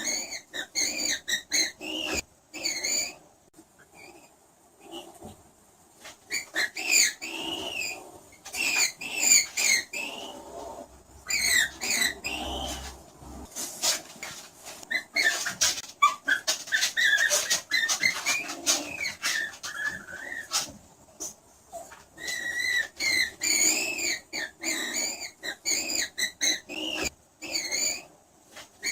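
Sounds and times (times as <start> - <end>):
skunk squeaking: 0.0 - 3.2, 6.3 - 13.0, 14.8 - 20.8, 21.7 - 28.1.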